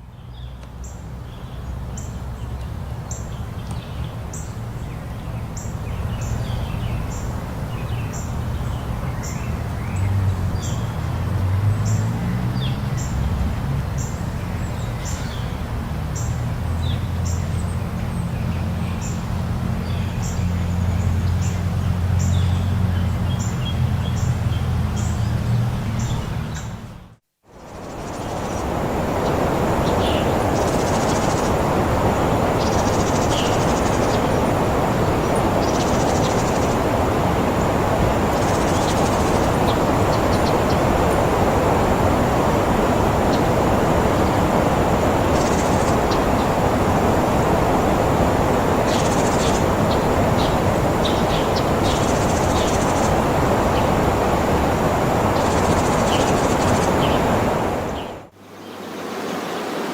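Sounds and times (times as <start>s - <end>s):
steady rushing noise: 3.5s - 59.9s
high bird calls: 27.7s - 59.9s.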